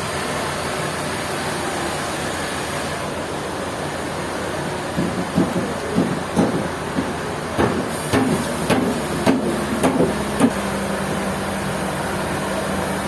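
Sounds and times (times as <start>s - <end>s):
sharp knocks: 5.0s - 10.6s.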